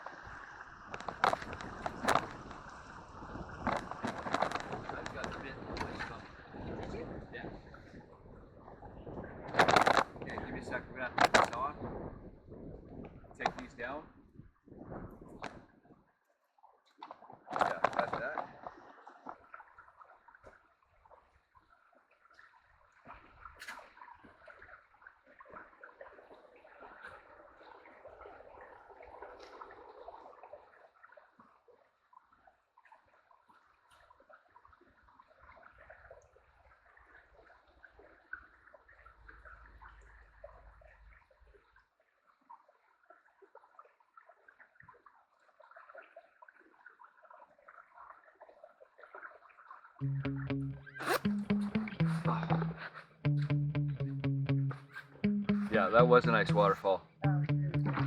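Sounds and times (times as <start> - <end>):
small waterfall splashing: 0.0 - 6.7
water trickling and gurgling: 0.0 - 13.8, 16.8 - 50.0.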